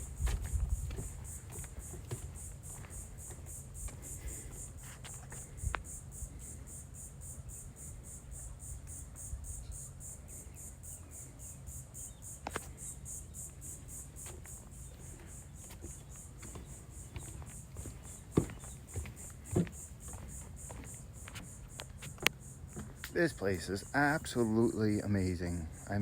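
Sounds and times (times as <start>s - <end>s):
footstep clicks: 0.0s - 5.9s, 12.4s - 12.8s, 14.2s - 24.5s.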